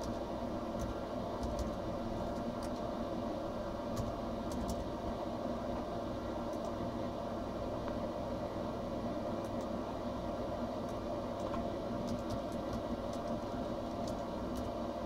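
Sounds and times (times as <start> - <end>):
faint irregular ticks: 0.8 - 2.9, 10.9 - 14.7.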